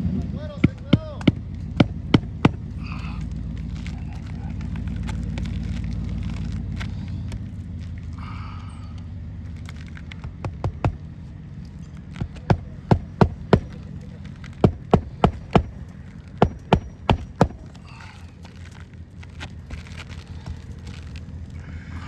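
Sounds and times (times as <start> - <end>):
hammer driving nails: 0.6 - 2.9, 12.2 - 17.9.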